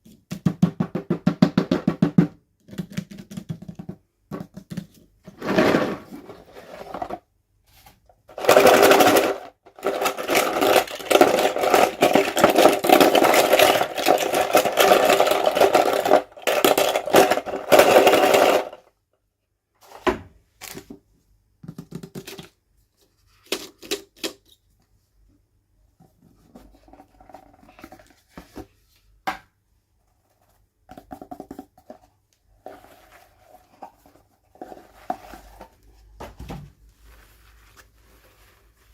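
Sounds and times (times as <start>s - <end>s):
plastic pieces clicking: 8.3s - 18.8s.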